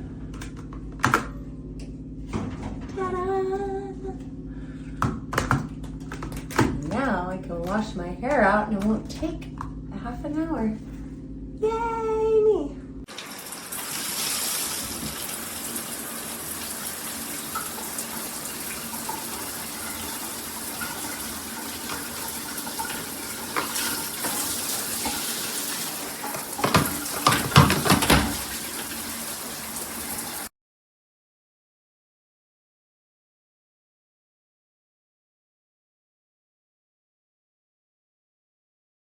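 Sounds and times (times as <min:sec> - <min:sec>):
water splashes and knocks: 0:05.0 - 0:07.0, 0:14.7 - 0:15.4, 0:17.5 - 0:29.1
shower water spraying: 0:13.1 - 0:30.5.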